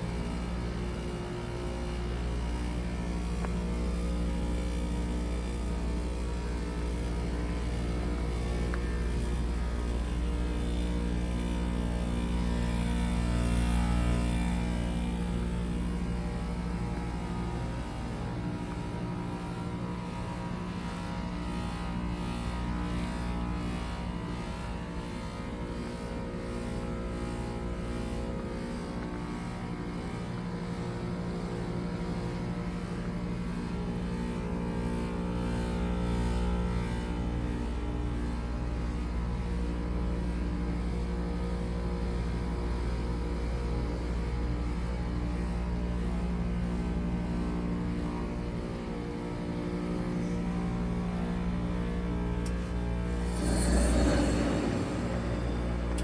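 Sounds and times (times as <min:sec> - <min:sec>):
heat pump compressor hum: 0:43.0 - 0:56.0.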